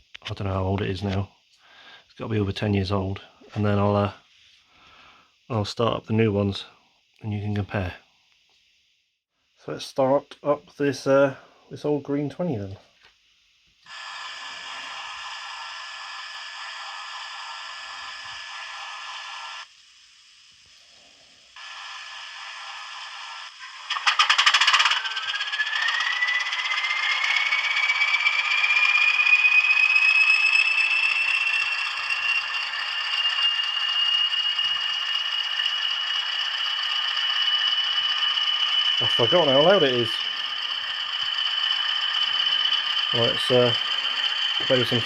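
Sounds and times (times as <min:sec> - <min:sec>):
speaker hiss: 0:00.0 - 0:08.1, 0:09.6 - 0:24.7, 0:38.9 - 0:40.3, 0:43.1 - 0:45.0
rising engine whine: 0:21.6 - 0:45.0.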